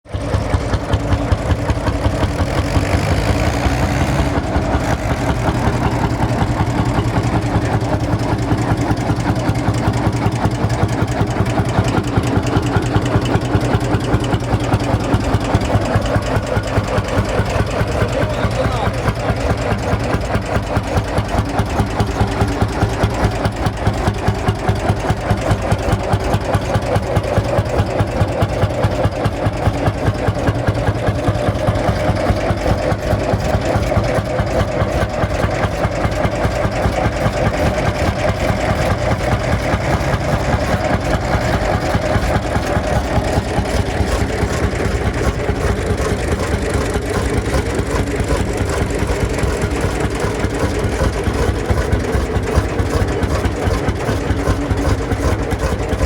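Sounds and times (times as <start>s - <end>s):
tractor engine slow idle: 0.0s - 56.0s.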